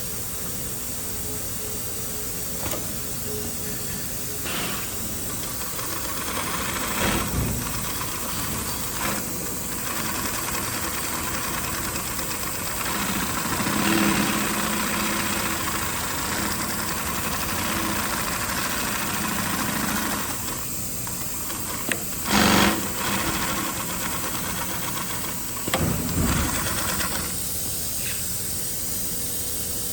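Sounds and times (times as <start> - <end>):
industrial sewing machine running: 4.8 - 27.5.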